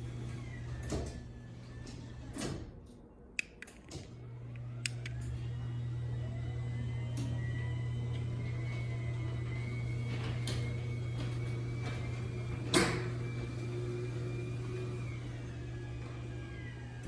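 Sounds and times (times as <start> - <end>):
garage door opener humming: 0.0 - 2.9, 3.6 - 17.0
garage door clunk: 8.0 - 14.2.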